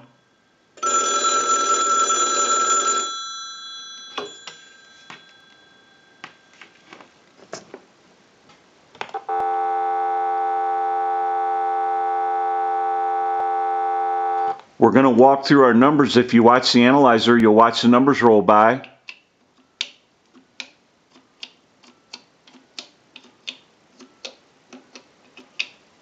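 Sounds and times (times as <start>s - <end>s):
telephone dial tone: 0.8s - 5.2s, 9.2s - 14.6s
payphone bell ringing: 0.8s - 6.6s.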